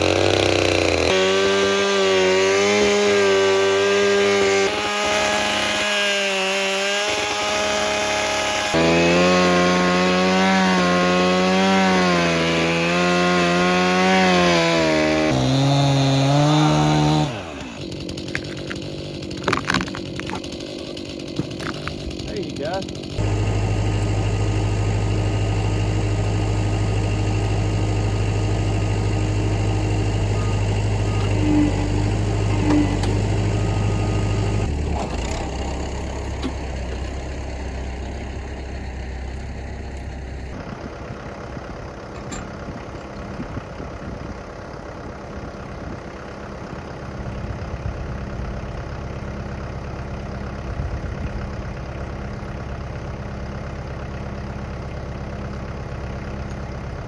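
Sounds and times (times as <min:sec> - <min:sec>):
engine idling: 0:00.0 - 0:05.6, 0:07.4 - 0:57.0.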